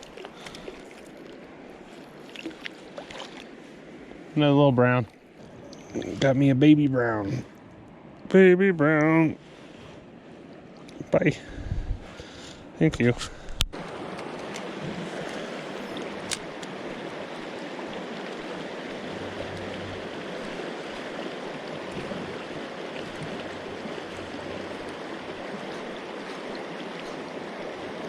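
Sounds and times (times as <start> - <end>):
river water rushing over rocks: 13.8 - 28.0.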